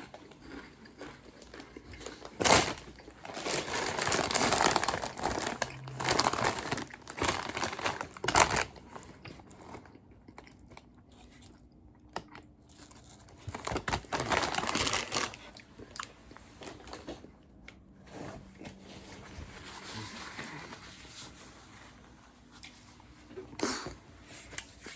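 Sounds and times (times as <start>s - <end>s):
chips being crunched and chewed: 0.1s - 16.1s
chip bag rustling: 1.5s - 9.1s, 12.7s - 15.6s.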